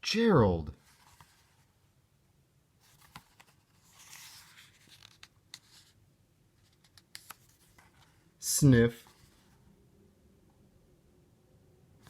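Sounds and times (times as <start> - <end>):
paper page turning: 2.8 - 6.0, 6.6 - 8.2.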